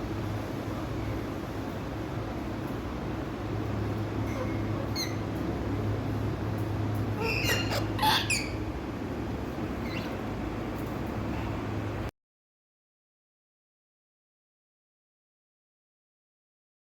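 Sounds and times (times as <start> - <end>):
steady low hum: 0.0 - 12.1
parakeet chirping and squawking: 4.3 - 5.3, 7.2 - 8.7, 9.7 - 10.2.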